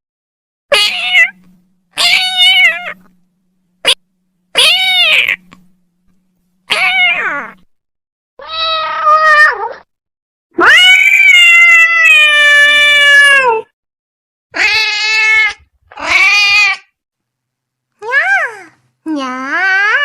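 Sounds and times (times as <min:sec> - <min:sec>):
cat meowing: 0:00.7 - 0:03.1, 0:04.6 - 0:05.5, 0:06.7 - 0:07.6, 0:08.4 - 0:09.9, 0:14.6 - 0:16.9.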